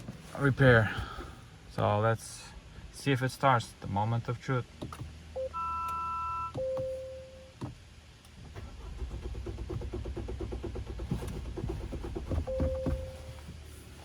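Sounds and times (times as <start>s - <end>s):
car dashboard chime: 5.4s - 7.6s, 12.5s - 13.4s
starter motor cranking engine: 8.5s - 12.6s.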